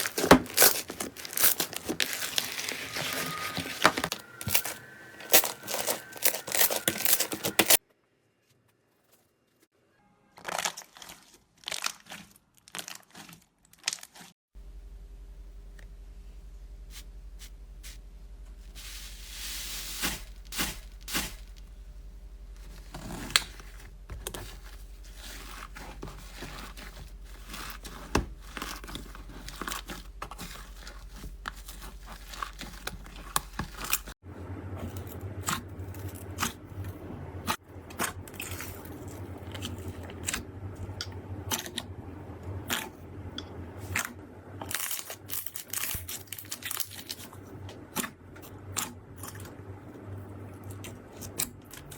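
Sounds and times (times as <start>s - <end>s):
slime squishing and crackling: 0.0s - 7.8s, 10.4s - 14.3s.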